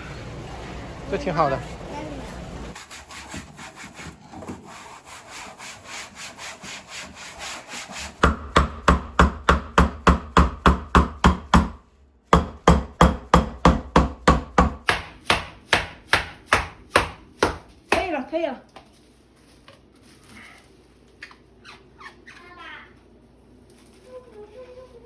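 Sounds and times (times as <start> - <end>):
knife chopping on cutting board: 8.1 - 11.8, 12.4 - 18.1.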